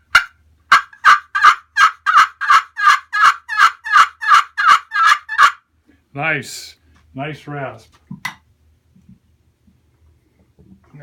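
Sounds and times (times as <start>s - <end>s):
raspy turkey call yelps: 0.0s - 5.6s.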